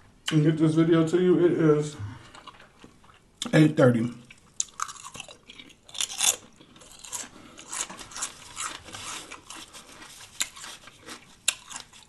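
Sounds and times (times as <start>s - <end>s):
chewing and crunching sandwich: 2.2s - 3.4s, 4.2s - 12.0s.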